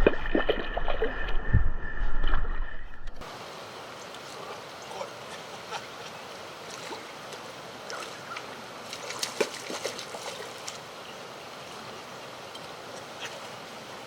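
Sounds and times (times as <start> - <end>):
creek water running: 3.2 - 14.0.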